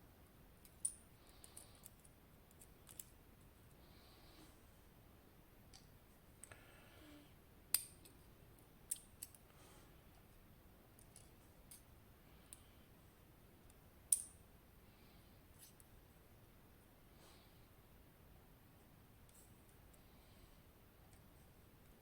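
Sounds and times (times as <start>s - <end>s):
metallic clicks of lock parts: 0.6s - 3.2s, 8.9s - 9.4s, 14.1s - 14.4s.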